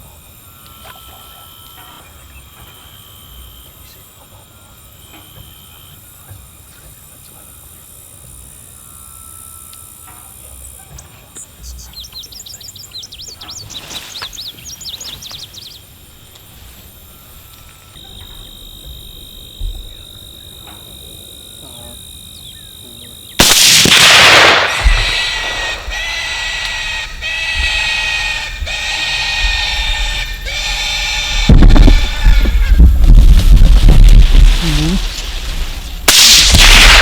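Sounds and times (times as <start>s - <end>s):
high insect buzz: 0.0s - 10.8s, 12.5s - 37.0s
birds chirping: 0.0s - 37.0s
rifle volley crack: 23.4s - 37.0s.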